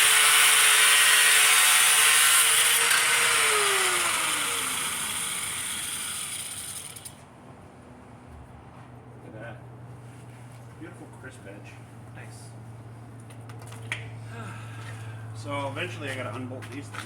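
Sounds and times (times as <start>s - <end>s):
angle grinder cutting steel: 0.0s - 7.2s.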